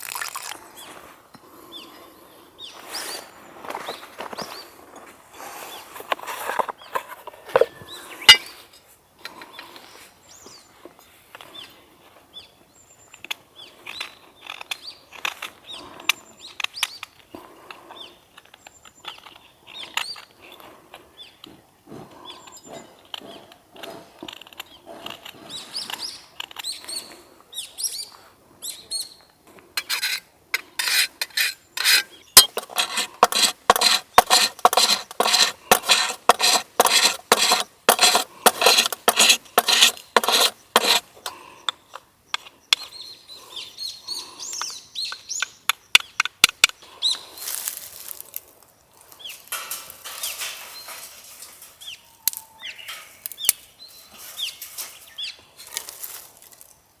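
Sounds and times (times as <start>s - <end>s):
camp gear clicks and knocks: 6.0s - 8.5s
saw cutting wood: 30.8s - 41.1s.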